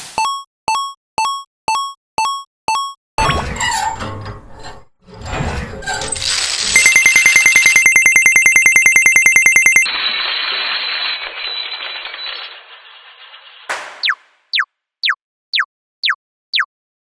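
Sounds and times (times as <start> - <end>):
bell ringing rapidly: 6.8 - 9.9.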